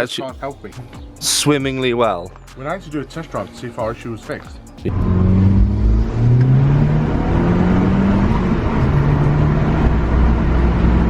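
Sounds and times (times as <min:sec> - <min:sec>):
car engine accelerating hard: 0:04.9 - 0:11.0.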